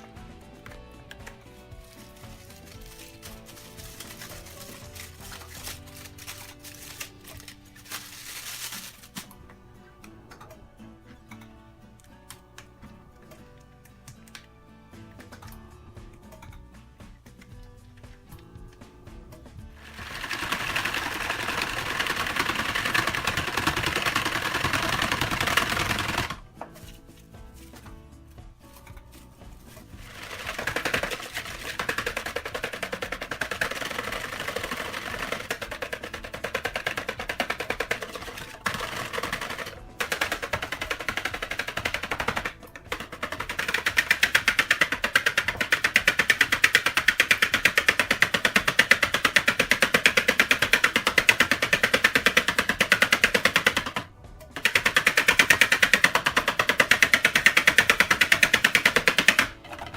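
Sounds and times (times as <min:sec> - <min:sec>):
whisk rattling against bowl: 0:30.0 - 0:54.0.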